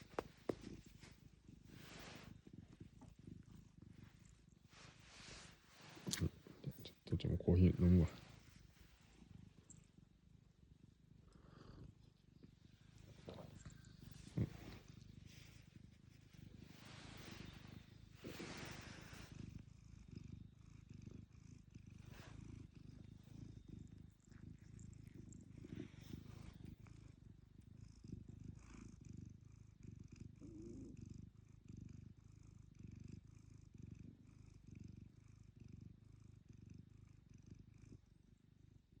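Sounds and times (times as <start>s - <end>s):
cat purring: 0.0s - 39.0s.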